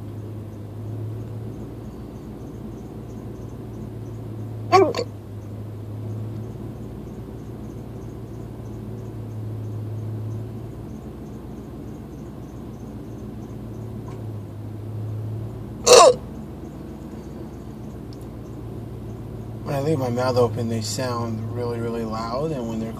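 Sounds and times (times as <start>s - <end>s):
steady low hum: 0.0s - 22.9s
man hiccuping: 4.7s - 5.1s, 15.8s - 16.2s.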